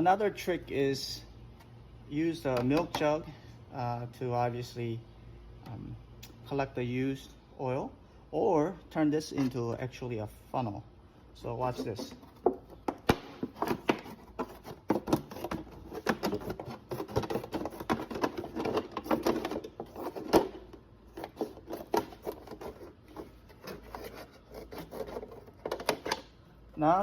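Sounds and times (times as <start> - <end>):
plastic jug clicking and crackling: 11.8 - 23.9, 24.9 - 26.3.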